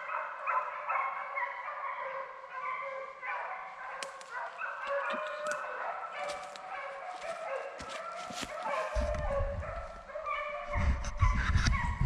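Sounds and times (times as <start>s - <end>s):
hounds baying: 0.0s - 12.0s.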